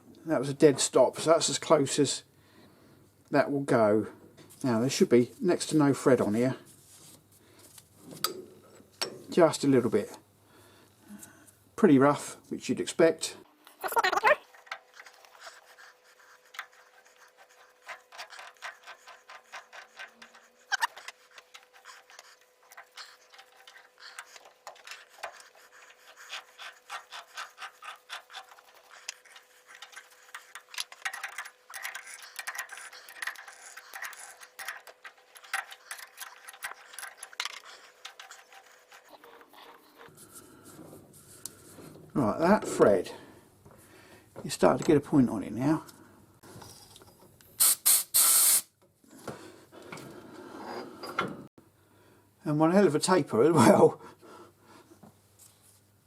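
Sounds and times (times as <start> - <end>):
thread die scraping metal: 16.5 - 43.0
faint steady hum: 49.0 - 52.5.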